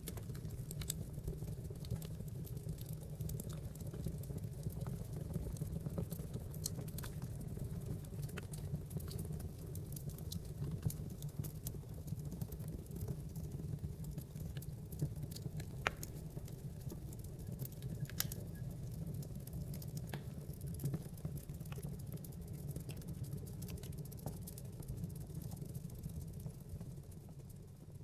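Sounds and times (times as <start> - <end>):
logs crackling and popping: 0.0 - 27.6
low rumble of flames: 0.0 - 28.0.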